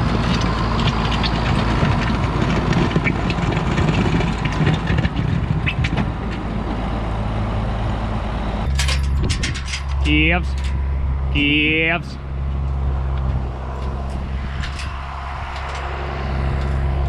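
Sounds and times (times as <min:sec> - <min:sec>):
tractor engine running: 0:00.0 - 0:17.0
sharp clattering and clicks: 0:00.2 - 0:06.5, 0:08.7 - 0:10.9, 0:12.5 - 0:17.0.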